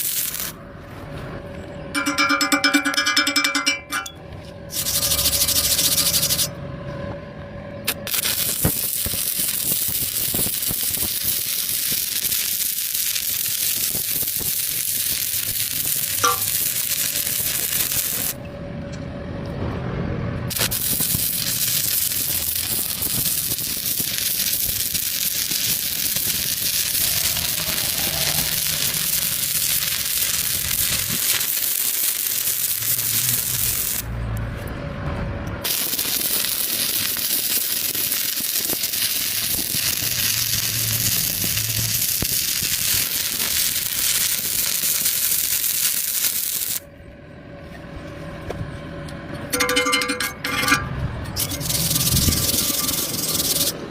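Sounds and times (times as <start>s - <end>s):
arc welding crackling hiss: 0.0s - 0.6s, 4.7s - 6.5s, 7.9s - 18.4s, 20.5s - 34.1s, 35.6s - 46.8s, 51.4s - 53.8s.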